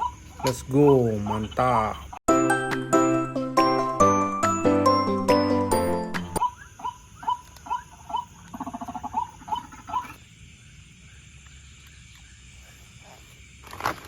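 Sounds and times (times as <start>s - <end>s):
waterhen calling: 0.0s - 2.2s, 6.4s - 10.2s.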